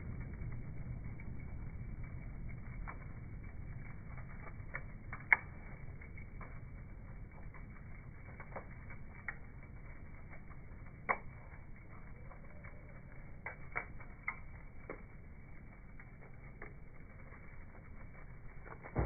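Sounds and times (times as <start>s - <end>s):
steady low rumble: 0.0s - 19.0s
wood fire crackling: 0.0s - 19.0s.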